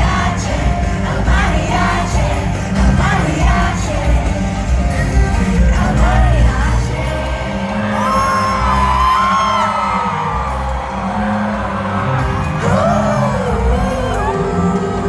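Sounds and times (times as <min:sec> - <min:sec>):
heavy pulsing bass beat: 0:00.0 - 0:09.2
high voices singing and whooping: 0:00.0 - 0:15.0
live hip-hop pop music: 0:00.0 - 0:15.0.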